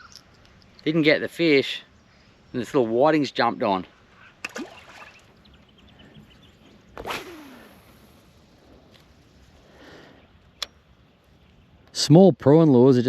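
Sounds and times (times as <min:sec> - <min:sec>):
faint fishing line noise: 0:04.0 - 0:11.8
fishing rod whoosh: 0:06.9 - 0:08.8.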